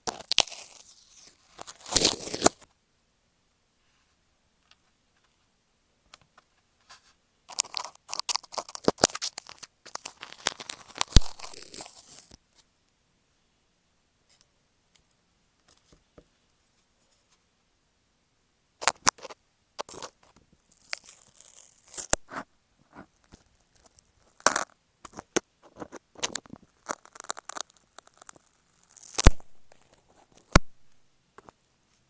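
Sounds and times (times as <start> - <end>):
crackly scratches on microphone: 6.4 - 12.3, 18.8 - 30.6.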